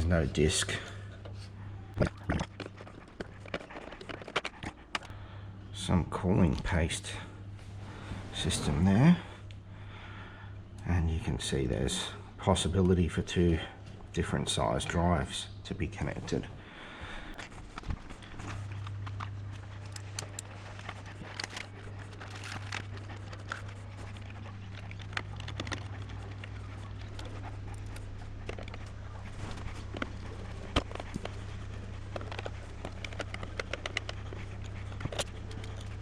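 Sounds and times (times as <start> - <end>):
steady low hum: 0.0 - 36.0
computer parts clicking and scraping: 18.8 - 36.0.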